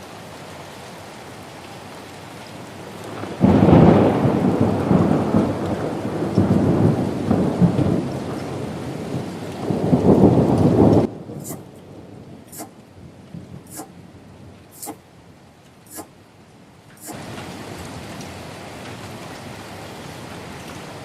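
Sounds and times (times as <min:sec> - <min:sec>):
rolling thunder: 0:03.2 - 0:14.1
rain hissing: 0:09.7 - 0:21.0.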